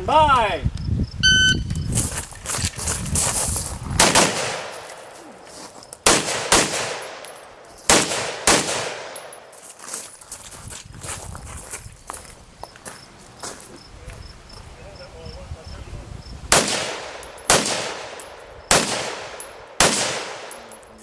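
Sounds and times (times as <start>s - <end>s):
shot timer beep: 1.2s - 1.9s
gunshots: 4.0s - 4.9s, 6.0s - 7.3s, 7.9s - 9.3s, 16.5s - 20.8s.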